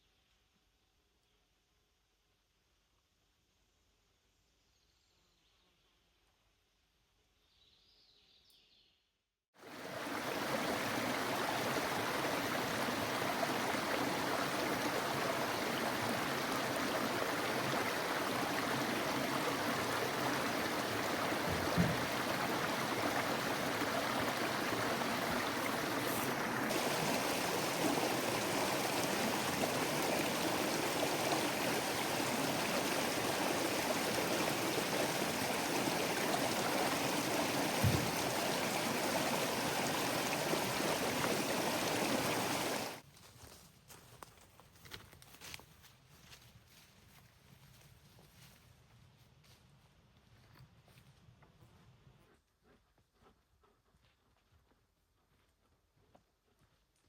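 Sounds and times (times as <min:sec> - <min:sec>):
steady rain falling: 0:09.7 - 0:43.0.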